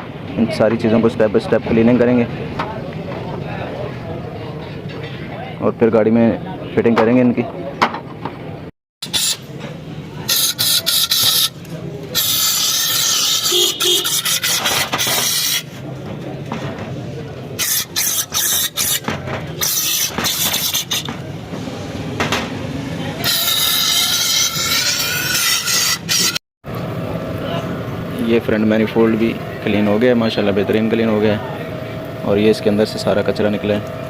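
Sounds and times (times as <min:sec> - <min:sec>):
scrubbing and scraping metal: 0:12.2 - 0:15.8, 0:17.6 - 0:21.2, 0:23.2 - 0:26.4.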